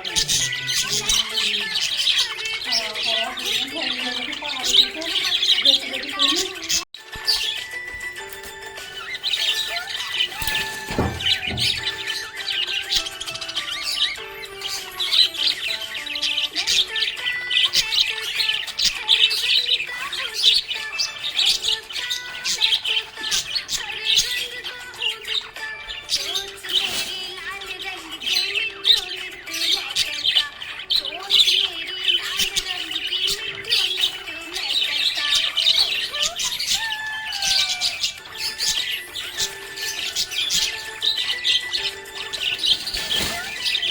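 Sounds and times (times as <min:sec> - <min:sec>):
budgies chirping and chattering: 0:00.0 - 0:43.9
parrot squawks: 0:28.4 - 0:43.9.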